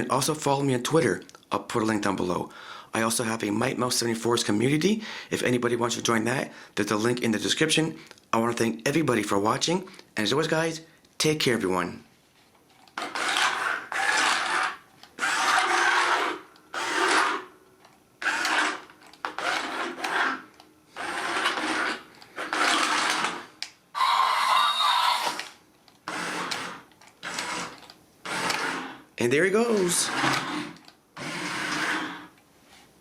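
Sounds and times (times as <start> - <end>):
toy car motor whirring: 13.0 - 17.5, 18.2 - 29.0, 29.8 - 32.3.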